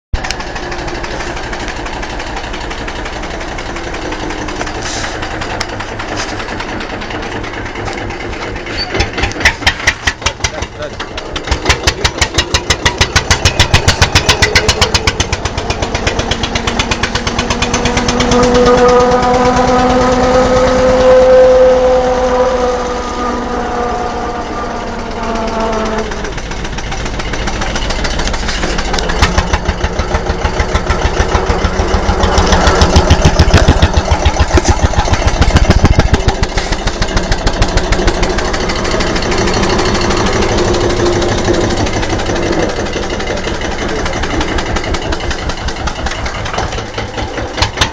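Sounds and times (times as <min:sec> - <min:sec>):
diesel tractor engine running: 0:00.1 - 0:47.9
whining tone: 0:11.4 - 0:47.7.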